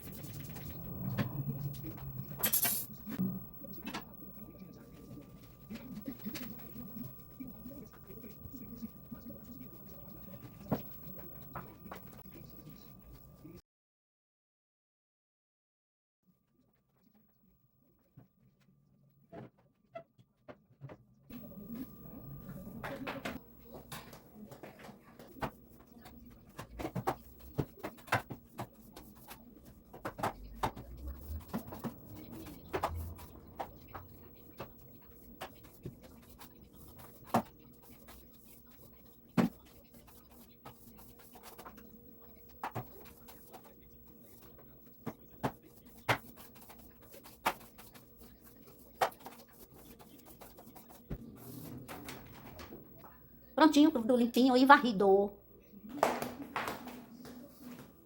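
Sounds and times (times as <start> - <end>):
dishes and utensils clinking: 2.4 - 3.0.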